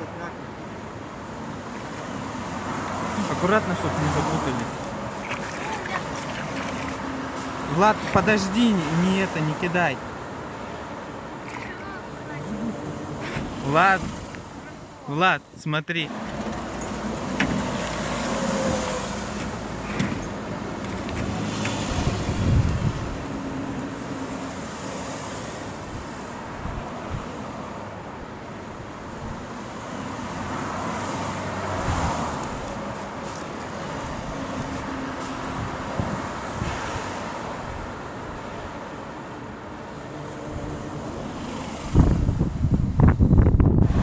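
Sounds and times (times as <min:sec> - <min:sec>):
wind noise on microphone: 0:16.5 - 0:23.9, 0:25.6 - 0:27.4, 0:31.6 - 0:38.8, 0:40.4 - 0:44.0.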